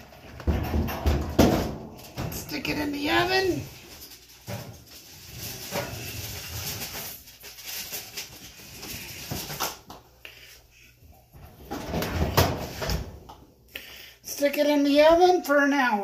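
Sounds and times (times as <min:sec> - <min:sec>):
knocks in kitchen: 0:00.4 - 0:02.3
rustling: 0:01.8 - 0:09.9.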